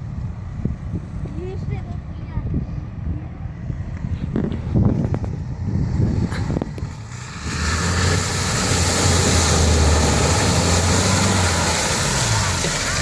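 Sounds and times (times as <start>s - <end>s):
off-road vehicle engine running: 4.0s - 13.0s
rushing noise: 7.3s - 13.0s.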